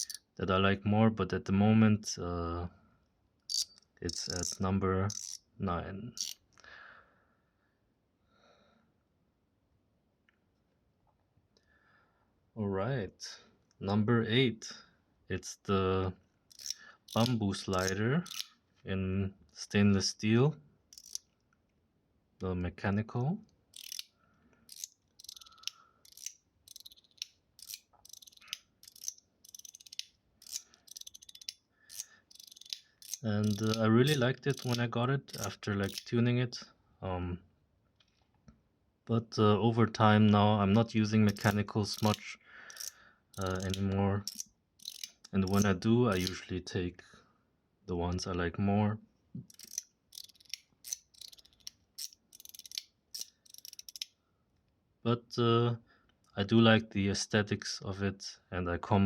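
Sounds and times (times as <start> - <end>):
metal fidget slider clicking: 0.0 - 0.2, 3.5 - 5.4, 6.2 - 6.4, 16.5 - 18.5, 20.9 - 21.2, 23.7 - 24.1, 24.7 - 36.1, 41.3 - 42.2, 42.8 - 46.4, 49.5 - 54.1.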